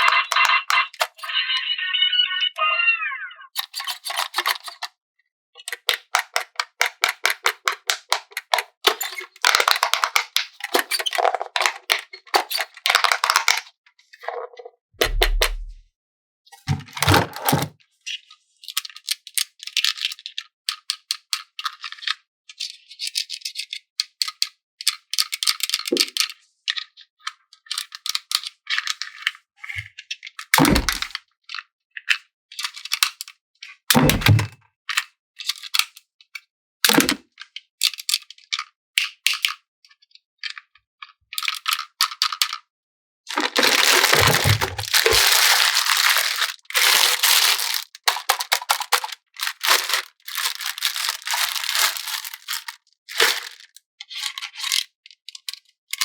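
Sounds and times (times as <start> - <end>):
plastic packaging crinkling: 43.3 - 54.8.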